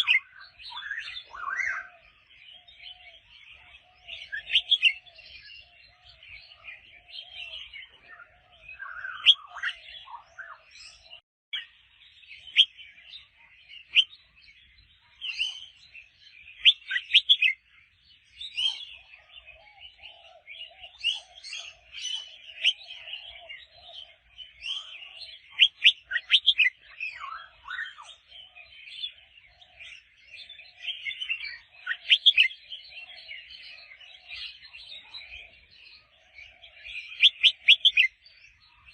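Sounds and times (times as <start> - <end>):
bird singing whistled phrases: 0.0 - 2.0, 2.9 - 5.6, 7.4 - 11.7, 12.4 - 13.2, 13.8 - 14.4, 16.4 - 17.6, 19.9 - 23.7, 24.4 - 28.3, 29.9 - 35.4, 36.7 - 38.7.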